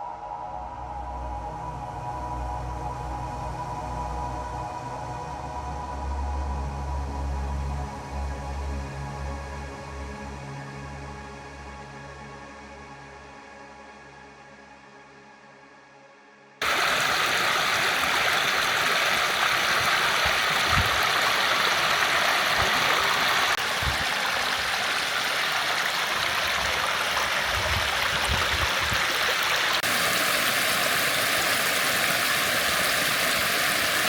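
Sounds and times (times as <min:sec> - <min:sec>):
creek water cascading: 0:16.6 - 0:34.0.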